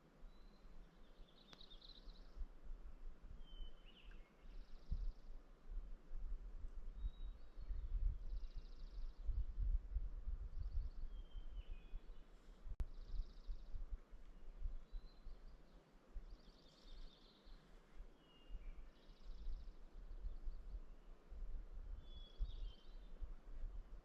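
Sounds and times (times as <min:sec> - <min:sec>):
songbirds singing trills: 0:00.2 - 0:05.5, 0:06.9 - 0:23.3
bird chirps: 0:00.3 - 0:02.4, 0:03.4 - 0:05.3, 0:10.6 - 0:13.9, 0:14.8 - 0:20.8, 0:22.0 - 0:23.2
wind rumble on microphone: 0:02.1 - 0:15.6, 0:17.9 - 0:24.0.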